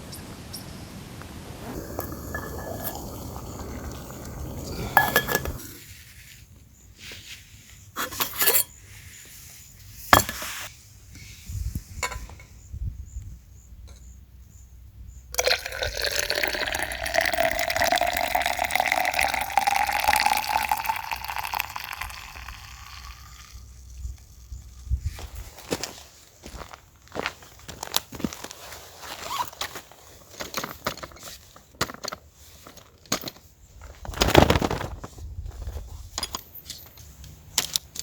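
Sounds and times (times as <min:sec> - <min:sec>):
liquid pouring into container: 0:01.7 - 0:05.7, 0:15.4 - 0:24.6.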